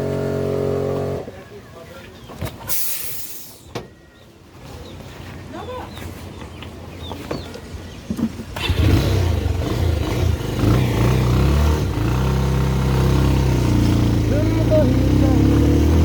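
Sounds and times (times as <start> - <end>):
motorcycle engine starting and running: 0.0 - 1.4, 8.3 - 16.0.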